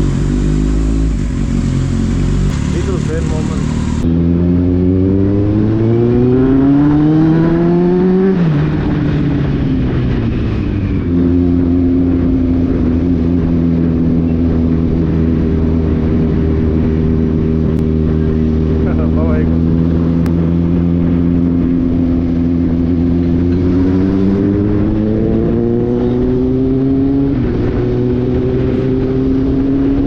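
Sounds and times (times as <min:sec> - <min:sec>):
motorcycle engine accelerating: 0:00.0 - 0:30.0.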